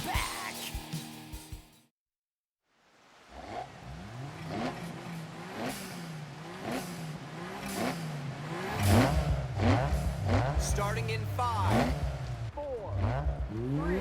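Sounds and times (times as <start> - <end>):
car engines revving: 3.2 - 14.0.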